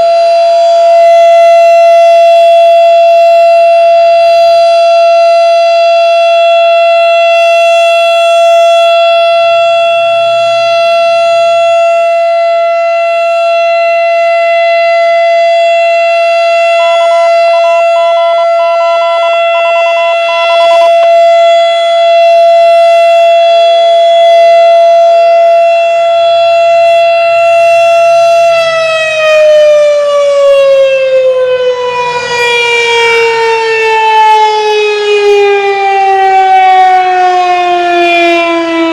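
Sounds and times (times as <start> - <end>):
warning siren winding down: 0.0 - 38.9.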